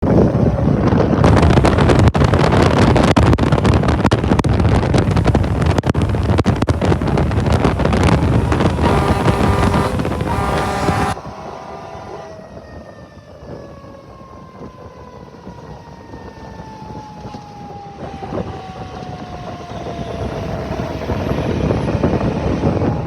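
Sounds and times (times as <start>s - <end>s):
fire truck driving: 0.0s - 23.0s
wind buffeting microphone: 0.0s - 23.0s
air horn blasts: 8.0s - 12.4s.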